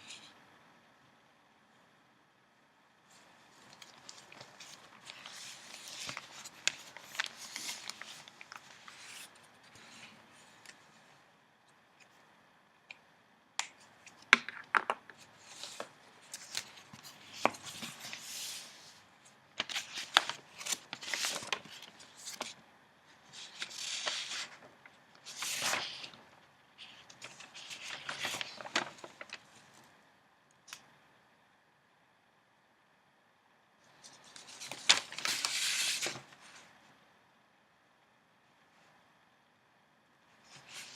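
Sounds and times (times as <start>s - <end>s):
paper pages rustling: 3.1s - 11.0s, 13.8s - 19.0s, 19.6s - 22.6s, 23.2s - 29.9s, 33.9s - 36.8s, 40.4s - 40.9s.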